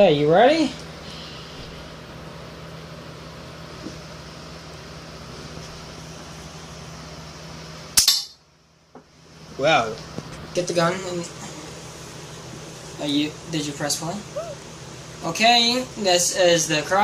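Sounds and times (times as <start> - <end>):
low hum and hiss: 0.0 - 17.0
loud sharp snap: 8.0 - 8.4.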